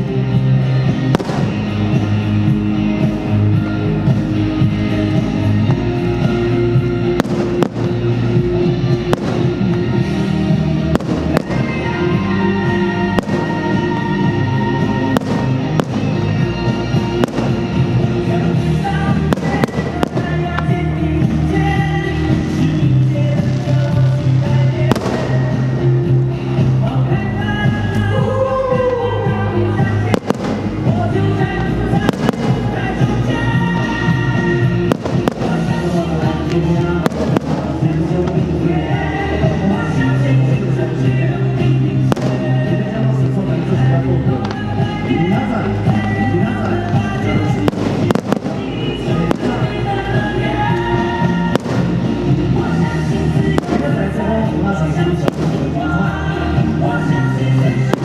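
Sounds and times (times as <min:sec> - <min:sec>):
loud music playing: 0:00.0 - 0:58.0
fireworks bursting in bangs: 0:01.1 - 0:02.2, 0:07.1 - 0:08.1, 0:08.9 - 0:10.3, 0:10.9 - 0:12.0, 0:13.1 - 0:18.2, 0:19.0 - 0:21.0, 0:23.3 - 0:25.8, 0:30.1 - 0:36.3, 0:36.9 - 0:38.5, 0:42.0 - 0:42.7, 0:45.9 - 0:54.1, 0:55.2 - 0:56.2, 0:57.8 - 0:58.0.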